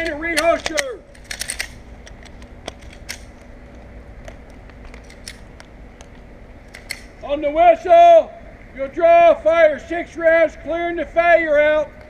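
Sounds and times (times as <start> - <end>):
handgun loading clicks: 0.0 - 3.5, 4.9 - 6.1, 6.7 - 7.1
low background hum: 0.0 - 12.0.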